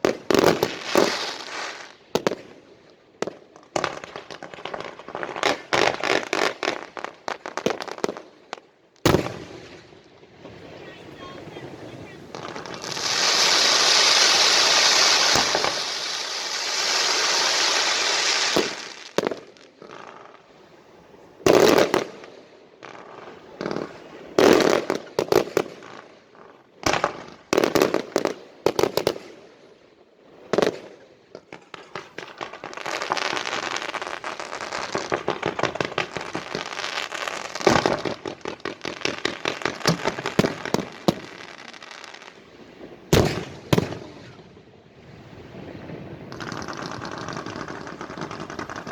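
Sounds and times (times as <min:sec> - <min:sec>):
firework bangs: 0:00.0 - 0:02.6, 0:03.2 - 0:20.4, 0:30.4 - 0:48.9
fireworks crackling: 0:00.0 - 0:48.9
spinning firework fast crackling: 0:11.7 - 0:19.2, 0:46.2 - 0:48.9.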